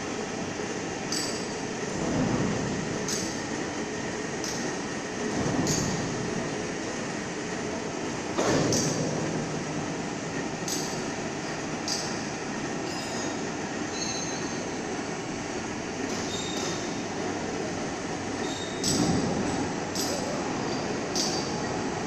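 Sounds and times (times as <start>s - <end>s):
steady machinery noise: 0.0s - 22.0s.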